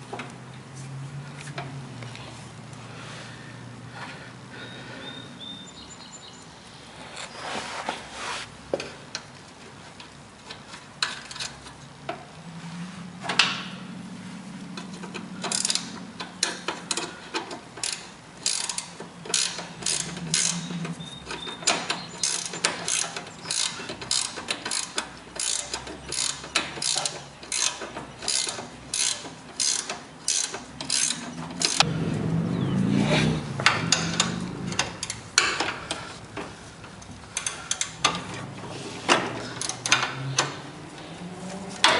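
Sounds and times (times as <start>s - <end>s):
ratchet wrench clicking: 14.8s - 31.9s, 33.6s - 38.4s, 39.1s - 41.1s.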